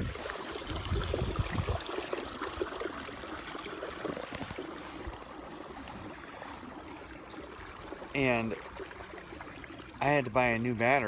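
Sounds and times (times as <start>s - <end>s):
wind buffeting microphone: 0.0s - 2.7s
river current rushing and splashing: 0.0s - 10.3s.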